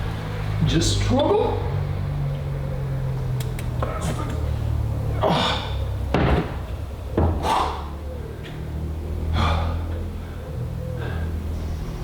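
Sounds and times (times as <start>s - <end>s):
man breathing hard: 5.1s - 6.0s, 7.3s - 12.0s.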